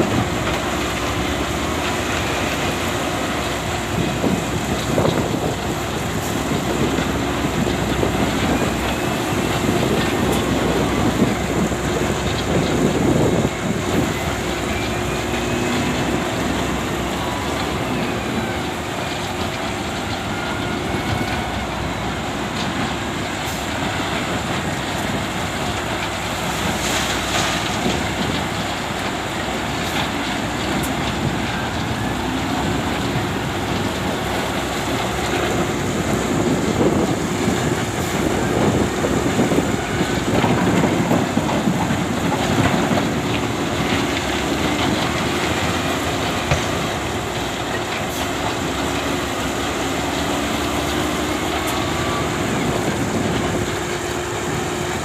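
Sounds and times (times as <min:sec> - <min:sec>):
diesel engine running under load: 0:00.0 - 0:55.0.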